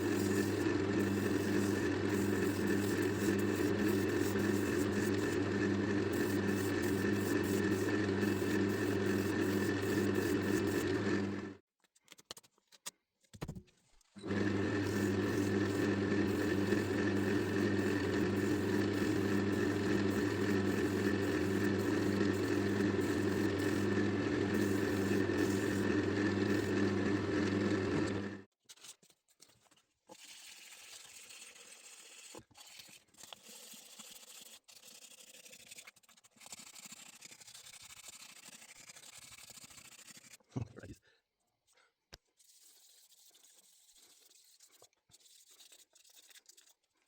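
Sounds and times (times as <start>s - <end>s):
wood lathe motor humming: 0.0s - 11.6s, 14.2s - 28.5s.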